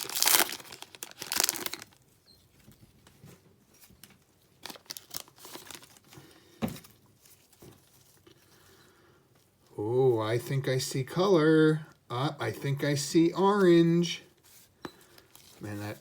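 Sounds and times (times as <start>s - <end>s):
cards rustling and clicking: 0.0s - 2.0s
wrapper tearing and crinkling: 0.0s - 2.0s, 4.6s - 6.1s.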